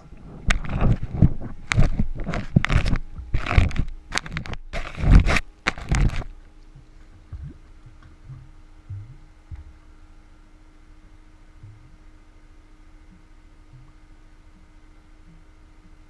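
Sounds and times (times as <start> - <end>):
faint hum: 0.0 - 16.0
sponge scraping inside pipe: 0.3 - 6.3.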